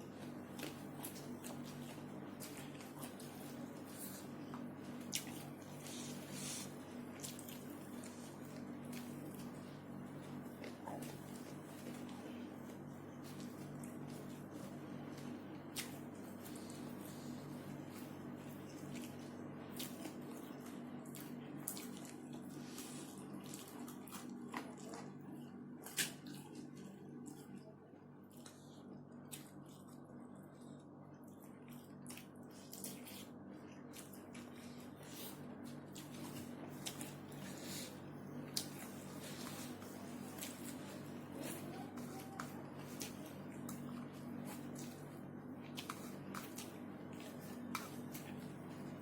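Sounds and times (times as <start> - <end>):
low electrical hum: 0.0 - 49.0
wet chewing and mouth smacks: 0.2 - 27.6, 28.2 - 49.0
wet chewing and lip smacks: 0.6 - 12.1, 13.2 - 25.2.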